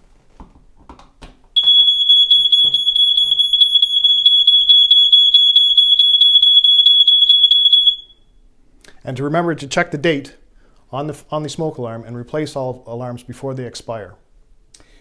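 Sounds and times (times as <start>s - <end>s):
smoke alarm tone: 1.6s - 8.3s.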